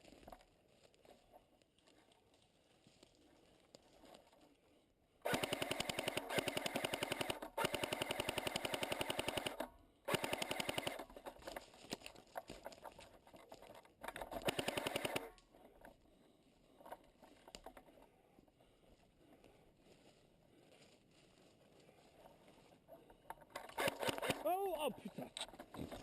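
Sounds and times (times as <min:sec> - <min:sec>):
airsoft gun firing full auto: 0:05.3 - 0:11.0, 0:14.4 - 0:15.3, 0:23.7 - 0:24.4.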